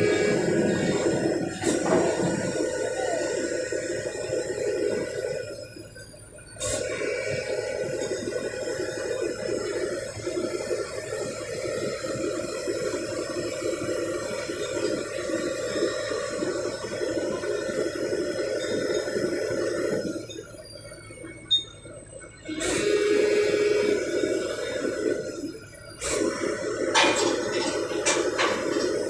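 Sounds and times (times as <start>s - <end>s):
excavator diesel engines running: 0.0s - 29.0s.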